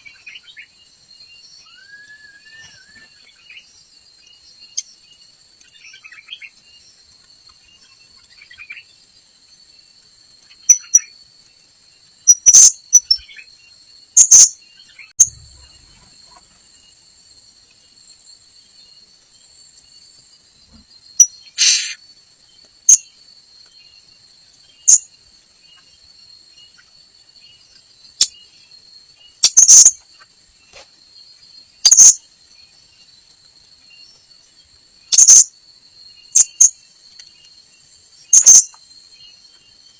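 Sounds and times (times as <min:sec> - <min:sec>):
shrill insect drone: 0:21.2 - 0:22.0
parrots calling: 0:21.6 - 0:22.0.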